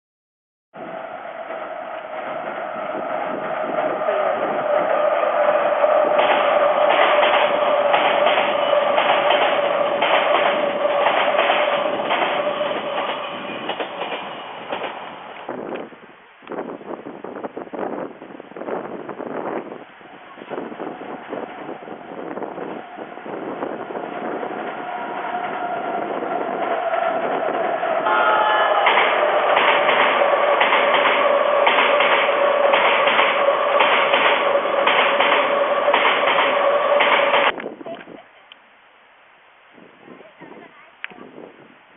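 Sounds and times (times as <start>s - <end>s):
electric train whine: 0.8s - 38.1s
train wheels clicking on rails: 1.4s - 16.0s, 20.5s - 37.7s.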